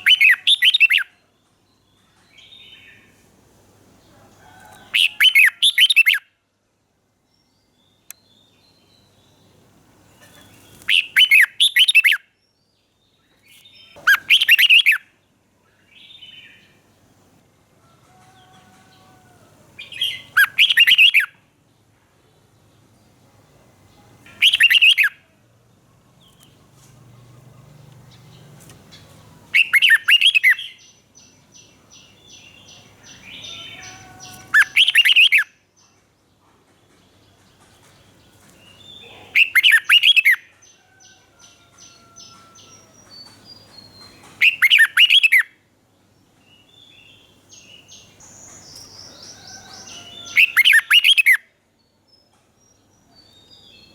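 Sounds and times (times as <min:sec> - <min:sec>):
rapid high bird chirps: 0:00.0 - 0:01.1, 0:10.2 - 0:12.4, 0:13.5 - 0:15.1, 0:19.9 - 0:21.3, 0:24.3 - 0:25.2, 0:28.1 - 0:35.6, 0:38.7 - 0:40.5, 0:41.9 - 0:45.5, 0:47.6 - 0:51.4
bird singing warbled phrases: 0:00.0 - 0:03.1, 0:04.9 - 0:06.3, 0:07.4 - 0:16.9, 0:19.8 - 0:21.4, 0:24.0 - 0:25.3, 0:26.2 - 0:36.1, 0:37.6 - 0:40.7, 0:41.8 - 0:45.6, 0:46.5 - 0:53.9.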